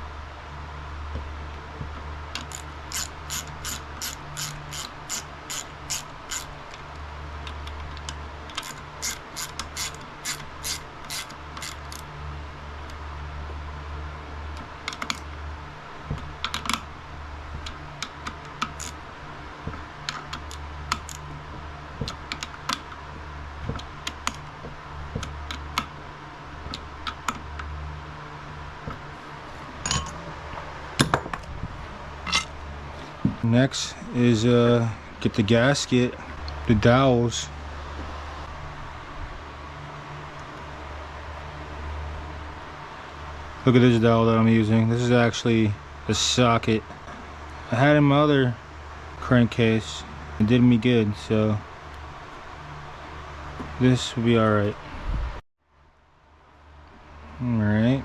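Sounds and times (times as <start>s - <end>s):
hand ratchet clicking: 2.4s - 6.8s, 7.6s - 12.0s, 18.0s - 19.0s.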